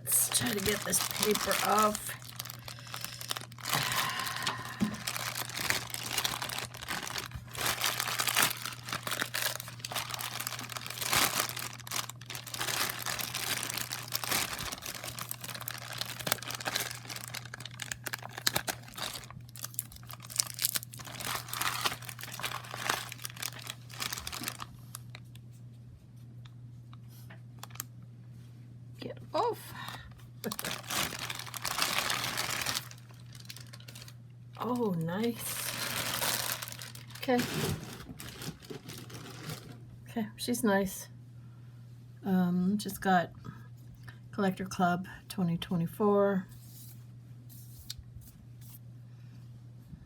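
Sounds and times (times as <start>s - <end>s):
steady low hum: 0.0s - 50.0s
paper crumpling and tearing: 0.1s - 24.8s, 30.4s - 34.1s, 35.3s - 39.8s.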